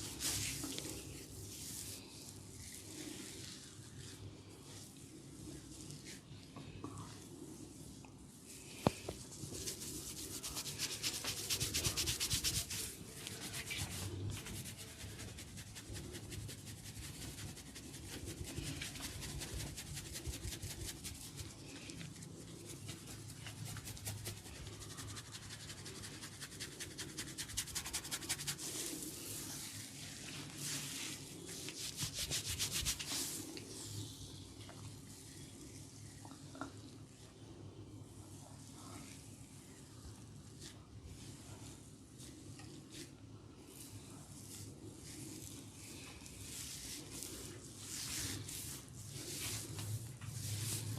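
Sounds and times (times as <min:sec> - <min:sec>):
fingertips scratching scalp: 0:09.4 - 0:12.9.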